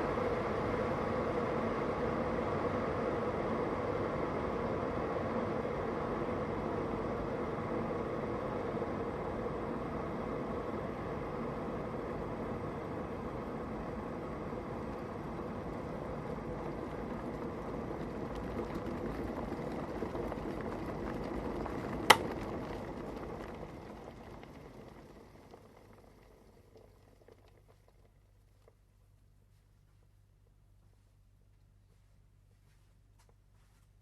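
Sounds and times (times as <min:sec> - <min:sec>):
kettle water boiling: 0:00.0 - 0:29.4
kettle switch click: 0:22.1 - 0:22.3.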